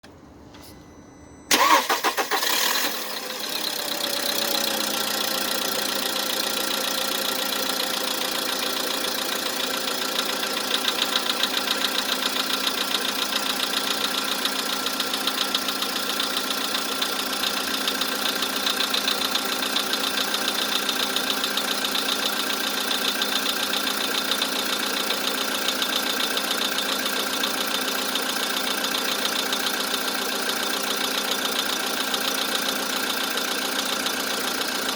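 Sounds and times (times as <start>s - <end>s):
starter cranking engine: 1.5s - 6.9s
car engine idling with knocking: 3.3s - 34.9s.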